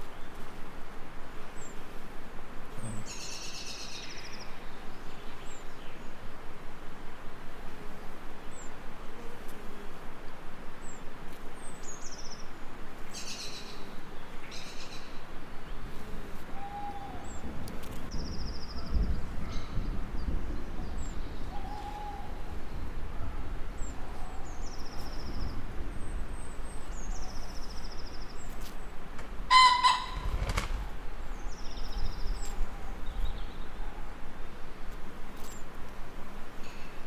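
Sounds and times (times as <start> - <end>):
trilled birdsong: 23.8 - 33.9
harsh bird call: 29.2 - 31.5.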